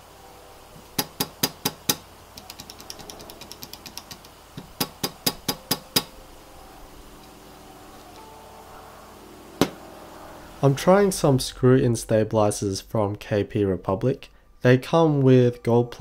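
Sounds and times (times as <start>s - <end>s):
keyboard keys clacking: 0.9s - 6.2s.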